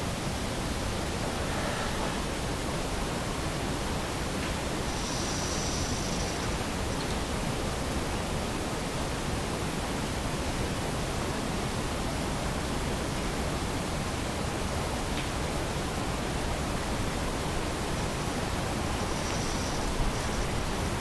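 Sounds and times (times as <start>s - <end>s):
steady hiss: 3.9s - 7.8s, 15.9s - 21.0s
faint tick: 19.2s - 19.4s.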